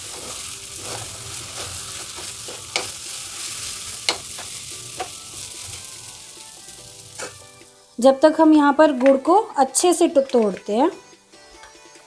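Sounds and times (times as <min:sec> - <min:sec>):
ginger sizzling in a pan: 0:00.0 - 0:08.5.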